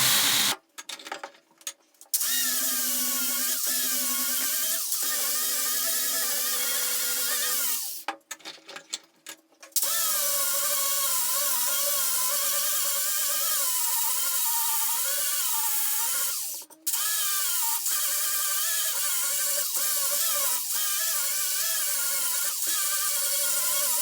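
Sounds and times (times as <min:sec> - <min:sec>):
power tool motor whining: 0:00.0 - 0:00.6.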